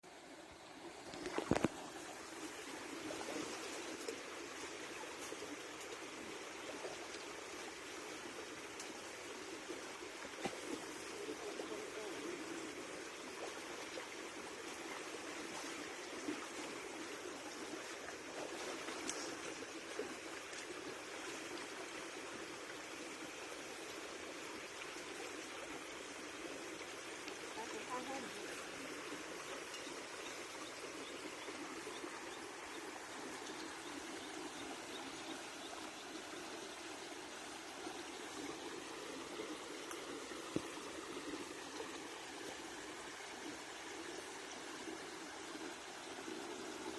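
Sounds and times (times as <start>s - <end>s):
running water babbling: 0.0s - 46.9s.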